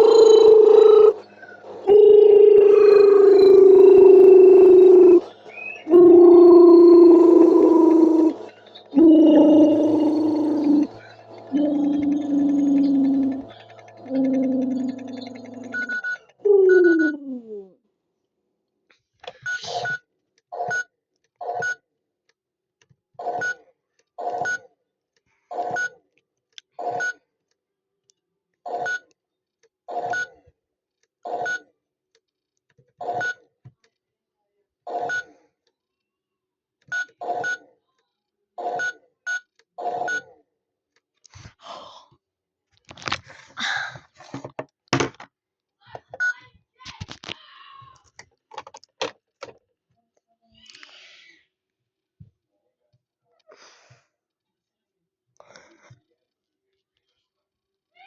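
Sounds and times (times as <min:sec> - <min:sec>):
electronic falling tone: 0:05.9 - 0:08.4, 0:09.0 - 0:16.0.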